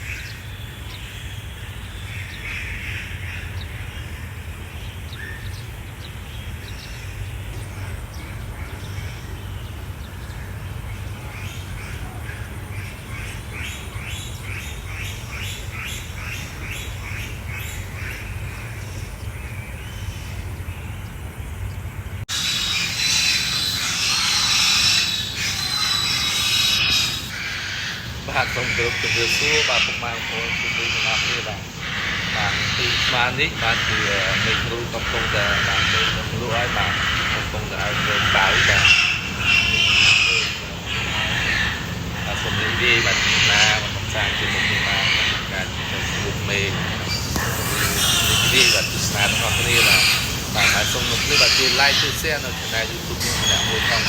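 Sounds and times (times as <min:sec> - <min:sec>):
birds chirping: 0:00.0 - 0:54.0
steady low rumble: 0:00.0 - 0:54.0
high hiss: 0:22.3 - 0:54.0.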